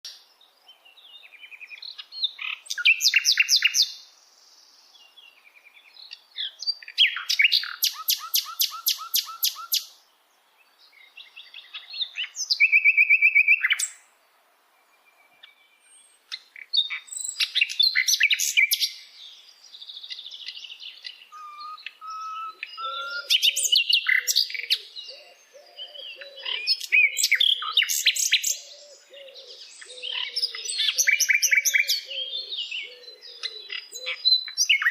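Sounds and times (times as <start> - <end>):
songbirds singing: 0.0 - 34.9
low pulsing bird call: 21.2 - 27.7.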